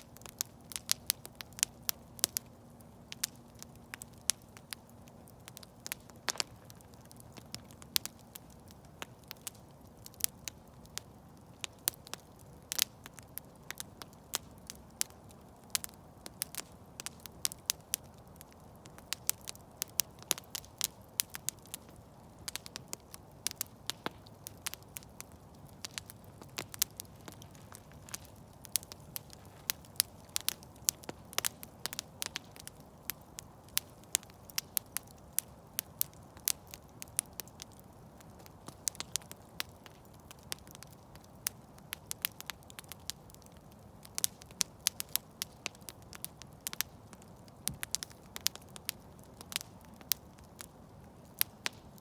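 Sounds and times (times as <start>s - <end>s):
wood crackling and popping: 0.0s - 52.0s
soft rush of flame: 15.4s - 52.0s.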